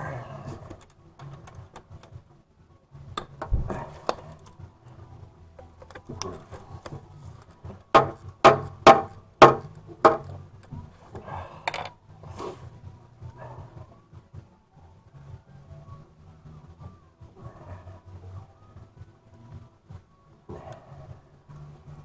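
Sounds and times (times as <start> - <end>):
hand tools clicking and clattering: 5.6 - 10.4, 11.1 - 12.0
sharp metal knocks: 8.0 - 10.3.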